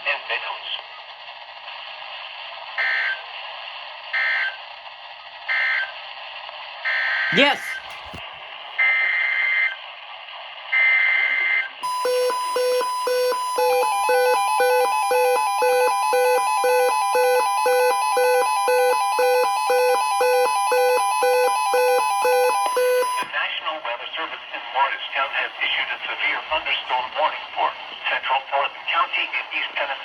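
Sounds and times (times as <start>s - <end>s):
pulsing beeping alarm: 11.8s - 23.3s
steady alarm tone: 11.8s - 23.3s.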